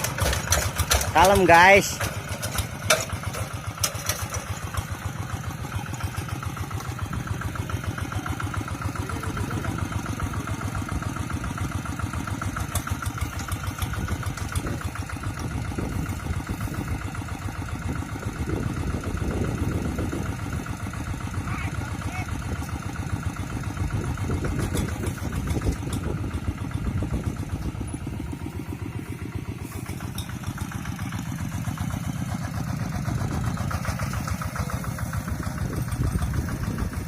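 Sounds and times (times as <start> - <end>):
diesel engine putter: 0.0 - 37.0.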